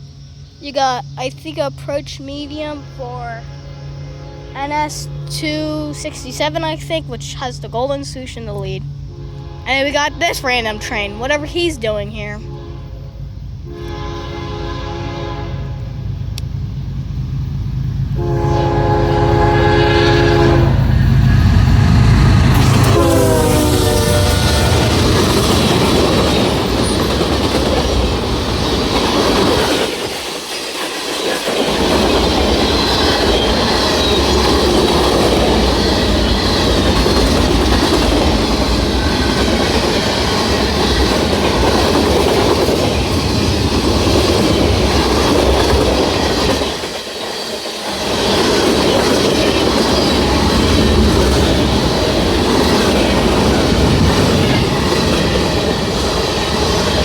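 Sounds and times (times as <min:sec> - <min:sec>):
freight train rumbling past: 0:00.0 - 0:57.0
wheels clattering over rail joints: 0:24.1 - 0:57.0.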